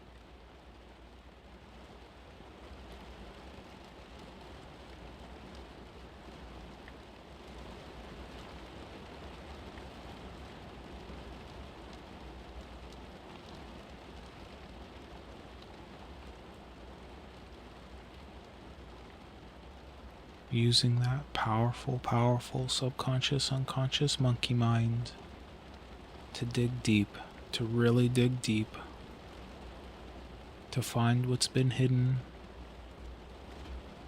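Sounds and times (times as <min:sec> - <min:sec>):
rain hiss: 0:00.0 - 0:34.0.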